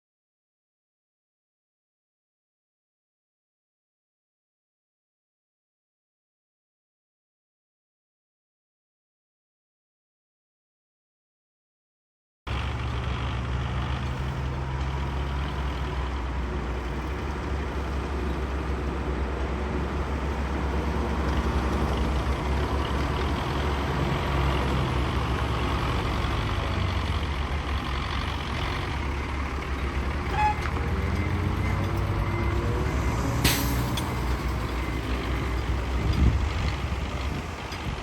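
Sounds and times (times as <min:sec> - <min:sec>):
diesel engine running: 0:12.5 - 0:38.0
brief high squeak: 0:30.2 - 0:32.5.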